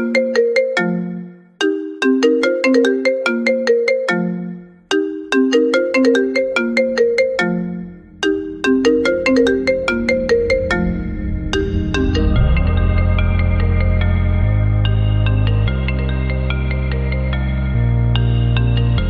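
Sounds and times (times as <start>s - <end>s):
marimba-like ringtone melody: 0.0s - 19.0s
deep bass swell: 7.8s - 15.7s.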